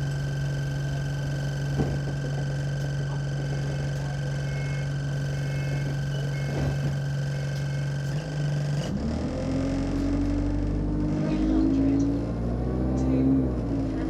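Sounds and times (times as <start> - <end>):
bus diesel engine idling: 0.0 - 14.0
faint short beeps: 4.4 - 7.9.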